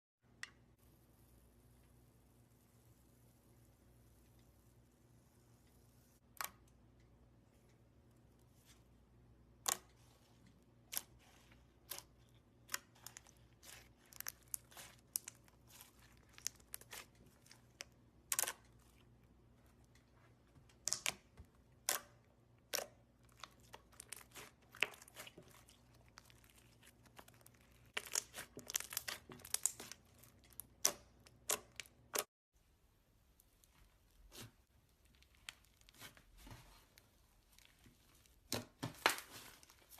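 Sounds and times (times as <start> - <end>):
slime popping and crackling: 10.9 - 19.0, 20.8 - 32.3.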